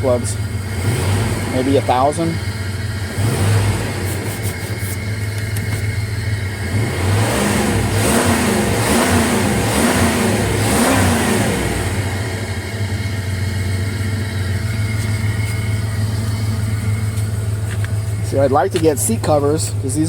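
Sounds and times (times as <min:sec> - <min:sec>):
engine idling and revving: 0:00.0 - 0:20.0.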